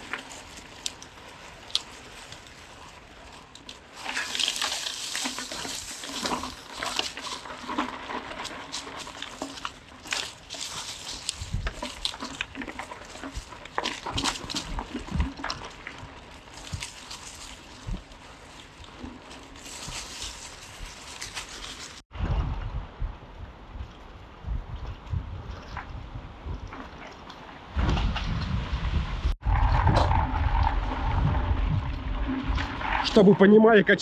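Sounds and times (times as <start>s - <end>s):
bike clicks and rattles: 0.0s - 22.0s
bike tyre noise on dirt: 0.0s - 34.0s.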